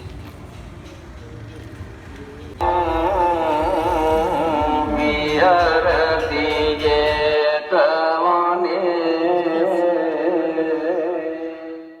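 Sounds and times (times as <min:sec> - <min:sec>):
steady drone: 0:02.5 - 0:11.6
person singing ornamented melody: 0:02.6 - 0:12.0.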